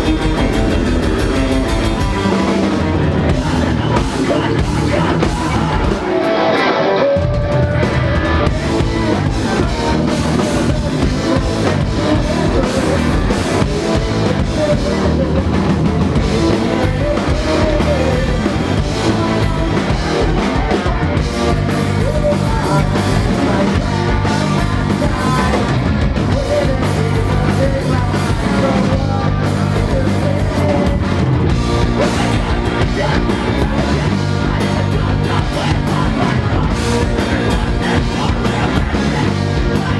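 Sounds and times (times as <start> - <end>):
rock band playing live: 0.0 - 39.9.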